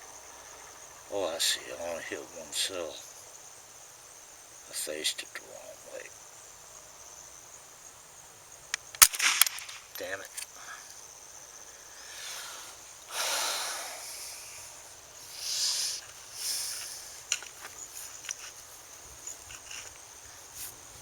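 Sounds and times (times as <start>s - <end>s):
insect chirring: 0.0s - 21.0s
rifle shot: 8.9s - 10.1s.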